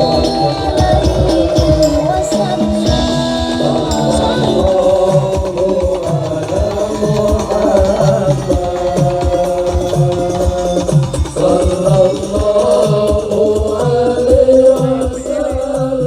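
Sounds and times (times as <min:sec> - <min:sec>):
heavy bass beat: 0:00.0 - 0:15.6
person singing: 0:00.0 - 0:16.0.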